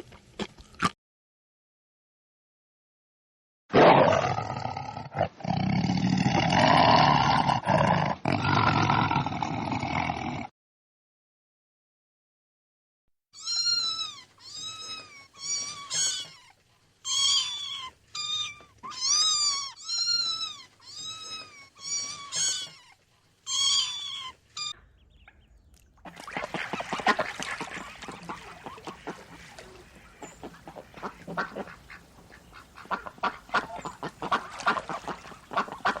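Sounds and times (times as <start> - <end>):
small animal crying: 13.4 - 24.8.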